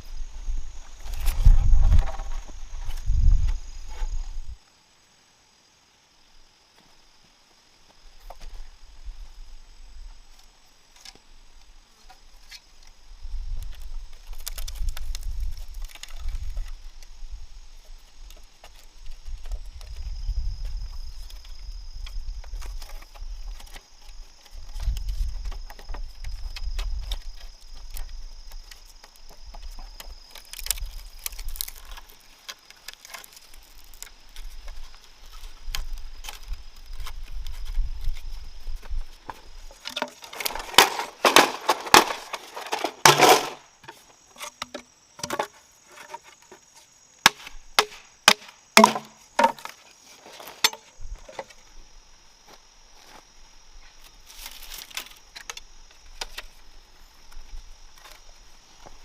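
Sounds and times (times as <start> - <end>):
blade chopping bamboo: 39.9 - 43.6, 47.2 - 49.7.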